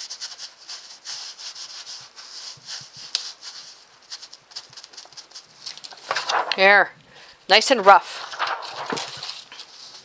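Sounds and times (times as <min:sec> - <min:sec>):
wipe scrubbing paint on paper: 0:00.0 - 0:04.4.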